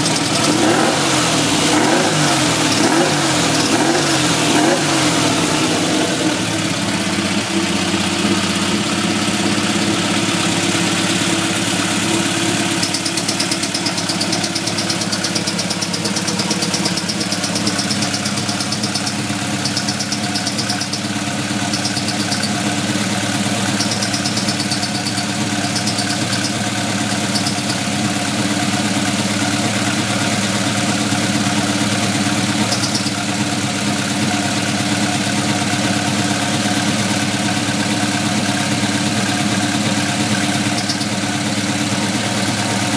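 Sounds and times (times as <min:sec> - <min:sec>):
engine revving: 0:00.0 - 0:27.8, 0:32.4 - 0:42.9
vehicle engine idling: 0:00.0 - 0:42.9.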